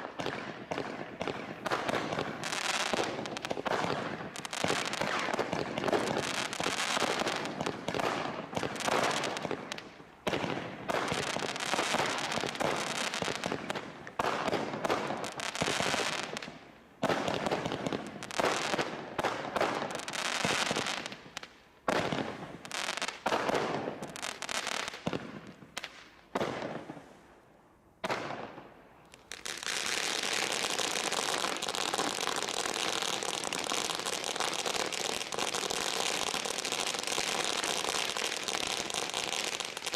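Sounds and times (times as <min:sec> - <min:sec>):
firework barrage shots and crackling: 0:00.0 - 0:27.2, 0:28.0 - 0:39.9.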